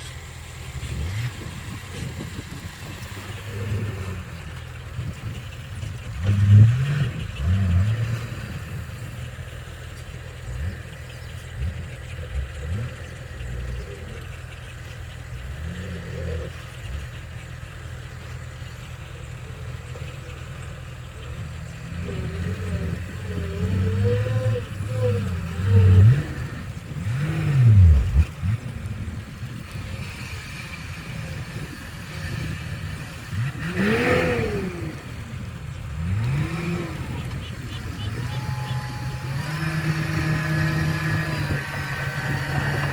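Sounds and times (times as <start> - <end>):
diesel engine revving: 0.0 - 42.9.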